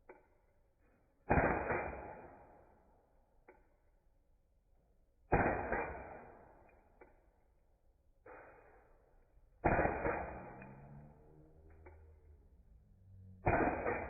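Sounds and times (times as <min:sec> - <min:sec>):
airsoft pistol shots: 0:01.3 - 0:02.5, 0:05.3 - 0:06.7, 0:09.6 - 0:12.1, 0:13.3 - 0:14.0.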